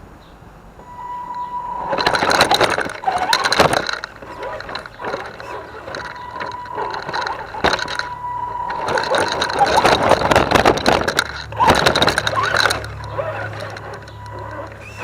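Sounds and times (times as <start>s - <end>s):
electric motor and gear whine: 0.8s - 15.0s
rapid clicks and rattles: 1.0s - 15.0s.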